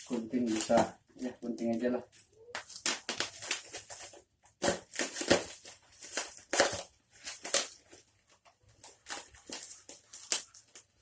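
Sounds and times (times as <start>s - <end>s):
wrapping crinkling: 0.0s - 11.0s
scissors snipping packaging: 2.6s - 8.0s.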